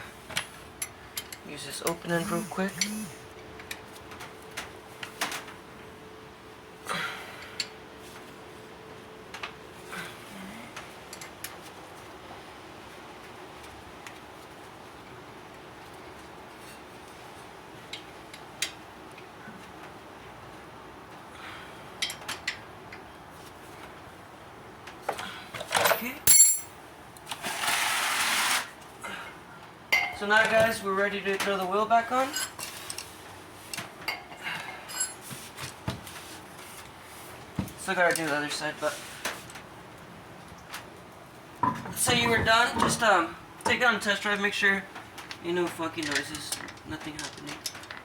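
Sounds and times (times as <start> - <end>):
faint steady hum: 0.0 - 27.4
metal tools clinking: 25.8 - 26.8, 32.3 - 32.7, 34.8 - 35.2
metal wrench clicks and clinks: 25.9 - 26.8.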